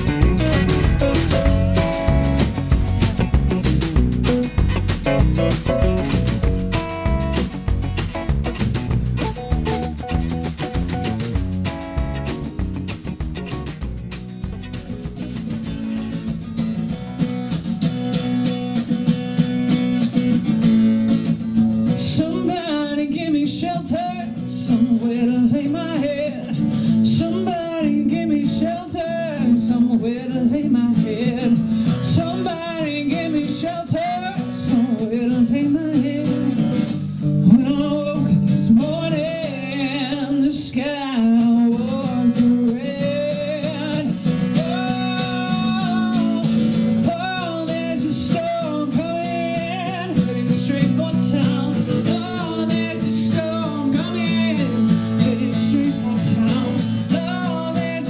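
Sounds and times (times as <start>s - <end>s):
acoustic guitar: 0.0s - 58.0s
woman singing: 22.0s - 36.6s, 37.4s - 58.0s.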